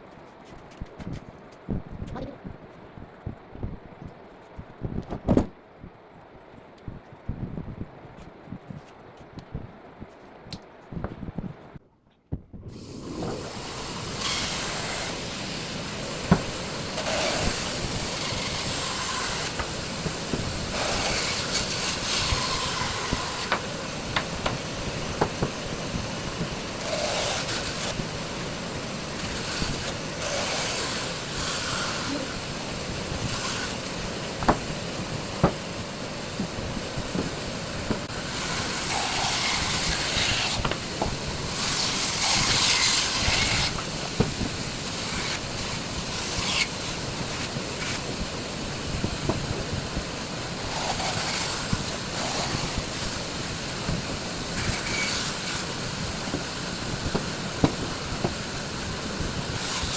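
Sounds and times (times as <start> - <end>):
hand tool scraping wood: 26.8 - 28.0, 50.6 - 53.2.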